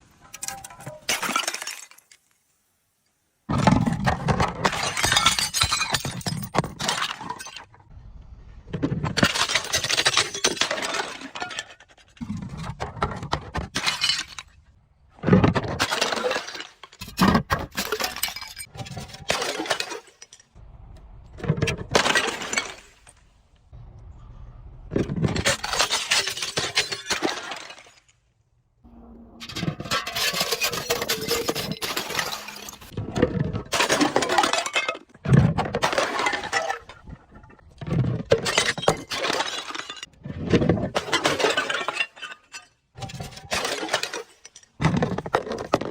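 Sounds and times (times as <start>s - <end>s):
glass breaking and crunching: 0.4s - 2.3s, 4.4s - 7.8s, 9.1s - 12.1s, 13.5s - 14.6s, 15.2s - 20.6s, 21.5s - 23.3s, 25.0s - 28.2s, 29.4s - 33.0s, 33.6s - 40.2s, 41.0s - 45.9s.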